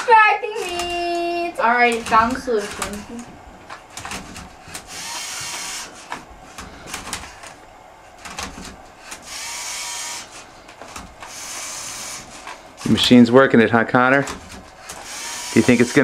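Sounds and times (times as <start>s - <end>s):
servo motors whirring: 4.2s - 6.2s, 9.1s - 10.5s, 11.2s - 13.1s, 14.9s - 16.0s.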